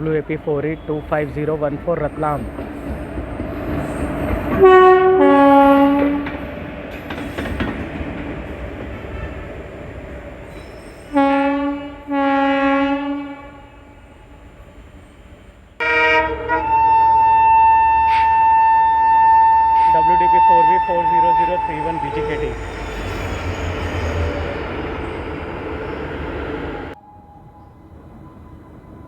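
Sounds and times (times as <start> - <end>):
rail and wheel noise: 0.0 - 29.0
electric locomotive horn blasts: 4.5 - 6.4, 11.1 - 14.0, 15.8 - 22.6
diesel locomotive horn: 4.5 - 6.5, 11.1 - 14.2, 15.8 - 23.1.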